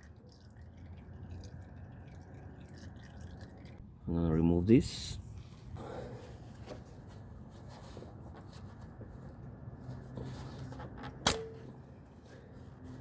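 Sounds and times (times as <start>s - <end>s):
low steady hum: 0.0s - 13.0s
sharp metallic clink: 11.3s - 11.8s.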